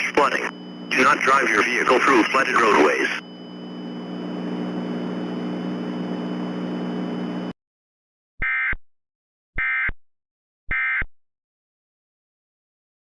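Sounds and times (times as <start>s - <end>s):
steady hiss with low hum: 0.0s - 7.3s
digital data squawks: 0.2s - 3.2s.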